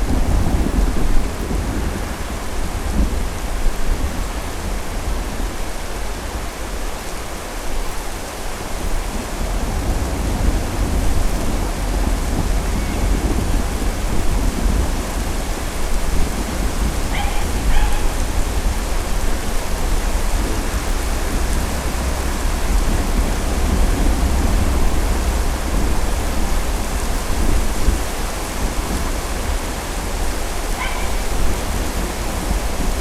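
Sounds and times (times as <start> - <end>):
low rumble of thunder: 0.0 - 33.0
steady rain: 0.0 - 33.0.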